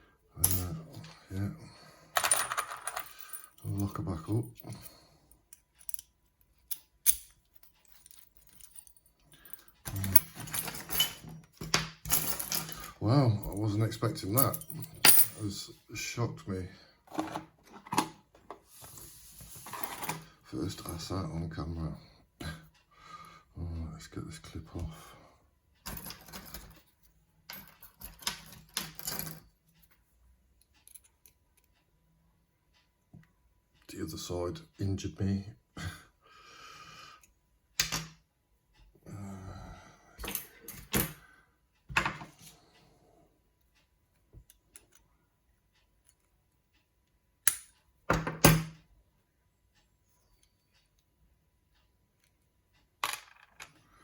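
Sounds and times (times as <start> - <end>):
metal rattling and handling: 6.7 - 13.7, 17.1 - 18.5.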